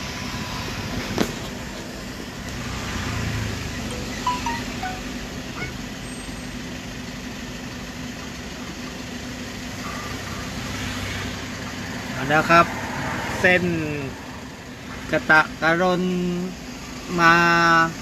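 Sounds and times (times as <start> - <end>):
road traffic humming: 0.0 - 18.0
short high chirps: 3.9 - 6.4.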